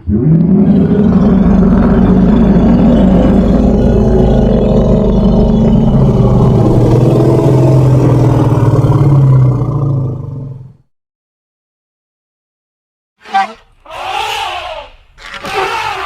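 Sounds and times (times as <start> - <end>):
elephant rumbling: 0.0 - 9.9, 13.2 - 16.0.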